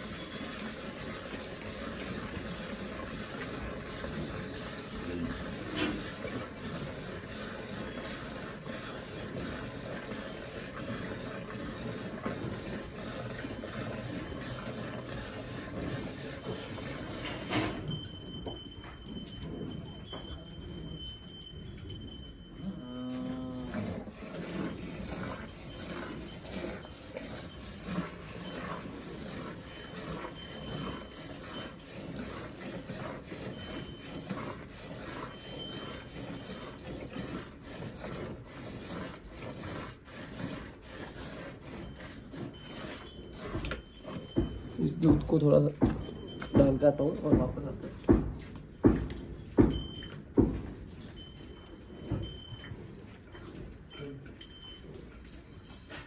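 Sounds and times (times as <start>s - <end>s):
cow mooing: 22.6s - 25.3s.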